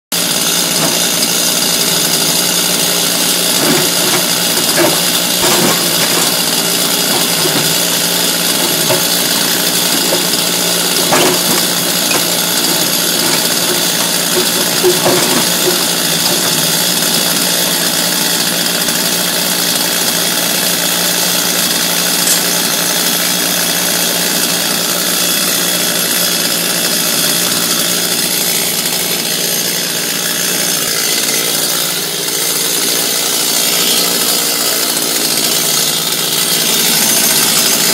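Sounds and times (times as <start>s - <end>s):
motor-driven equipment running: 0.2s - 37.9s
sharp knocks: 3.4s - 17.0s.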